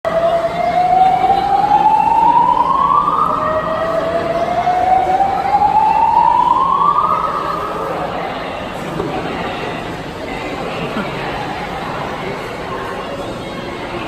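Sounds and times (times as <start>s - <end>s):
fire alarm whoop tone: 0.1s - 8.4s.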